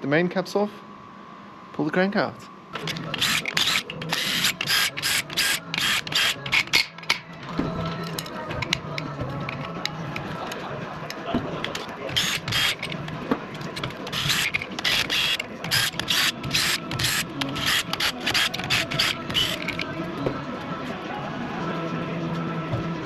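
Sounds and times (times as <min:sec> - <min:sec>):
ratchet wrench clicking: 0:02.8 - 0:07.2, 0:12.1 - 0:13.1, 0:13.8 - 0:19.9.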